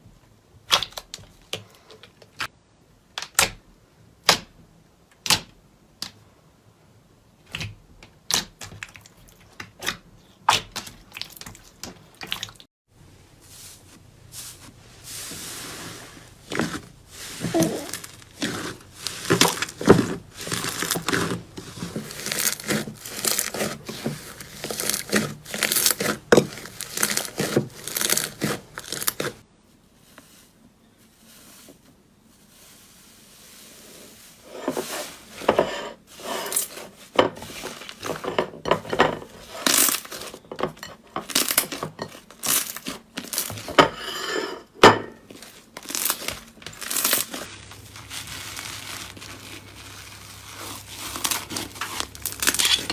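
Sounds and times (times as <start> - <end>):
slime crackling and popping: 17.4 - 29.4, 45.7 - 52.9.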